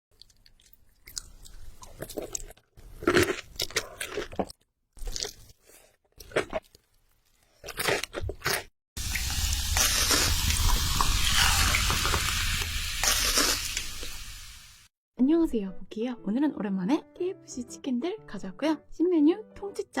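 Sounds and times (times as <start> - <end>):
crunchy chewing of fried chicken: 0.1 - 8.7
loud hissing noise: 9.0 - 14.9.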